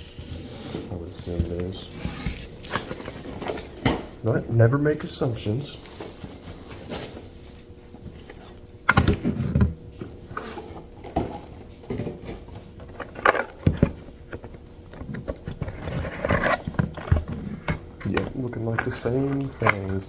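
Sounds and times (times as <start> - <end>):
cardboard and plastic rustling: 0.0 - 20.0.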